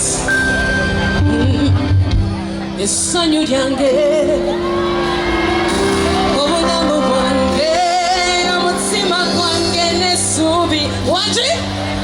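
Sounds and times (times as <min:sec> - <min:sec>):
live band music: 0:00.0 - 0:12.0
person singing long notes: 0:02.8 - 0:12.0.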